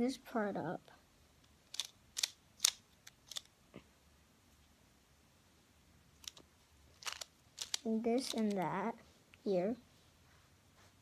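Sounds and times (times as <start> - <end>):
plastic puzzle clicking: 1.6 - 3.5, 6.2 - 6.4, 7.0 - 8.6.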